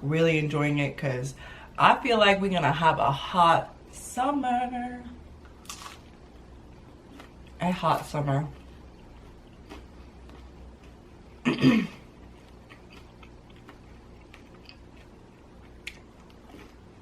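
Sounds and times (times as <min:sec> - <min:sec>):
woman coughing: 0:11.4 - 0:12.0.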